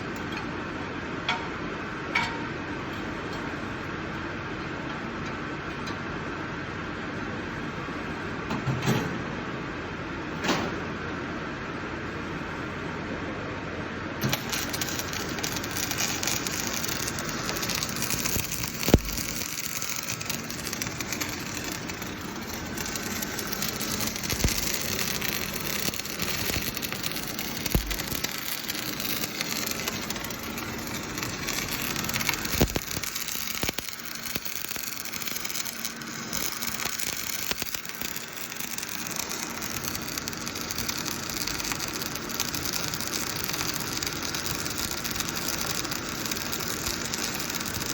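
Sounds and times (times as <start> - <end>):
sharp clicks: 14.2 - 47.9
welding arc crackling: 14.2 - 47.9.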